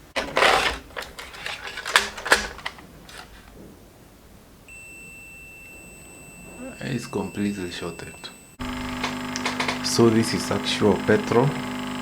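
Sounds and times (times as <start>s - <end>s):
multimeter continuity beep: 4.7s - 8.7s
test probe clicks and rustle: 9.0s - 9.9s.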